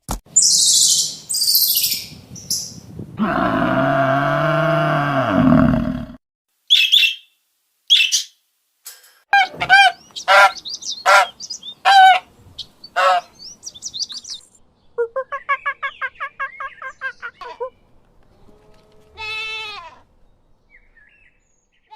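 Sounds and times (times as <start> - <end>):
bird-like animal calls: 9.4 - 14.0.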